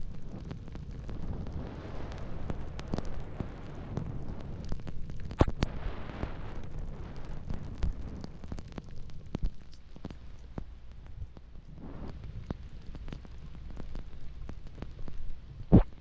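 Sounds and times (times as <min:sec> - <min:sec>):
hiss of sliding over snow: 0:01.2 - 0:04.7, 0:05.6 - 0:08.4, 0:11.7 - 0:12.2.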